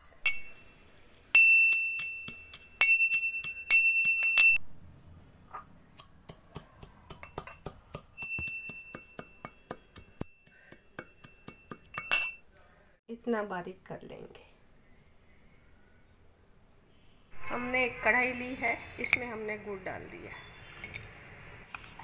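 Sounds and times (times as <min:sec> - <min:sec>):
pestle striking metal mortar: 0:01.4 - 0:04.6, 0:06.0 - 0:12.4.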